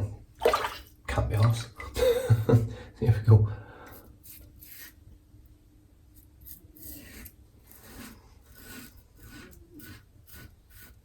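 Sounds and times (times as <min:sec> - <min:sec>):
razor scraping lathered stubble: 0:04.0 - 0:05.0, 0:06.4 - 0:11.0.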